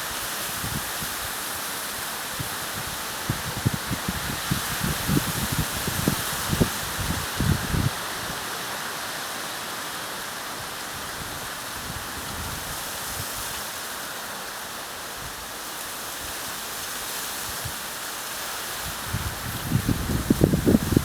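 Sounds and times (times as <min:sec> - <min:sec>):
wind buffeting microphone: 0:02.4 - 0:08.0, 0:18.9 - 0:21.0
wind blowing: 0:19.0 - 0:21.0.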